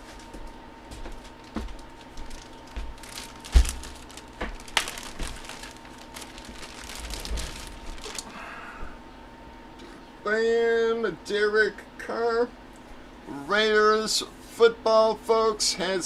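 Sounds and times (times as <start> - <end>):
packaging crinkling: 1.1 - 8.4.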